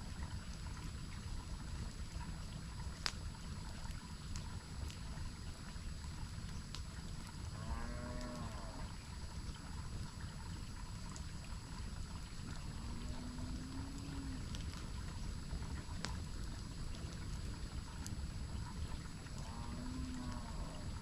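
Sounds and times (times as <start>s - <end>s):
campfire popping: 0.0s - 7.5s, 9.0s - 21.0s
low animal call: 12.7s - 14.7s, 19.3s - 21.0s.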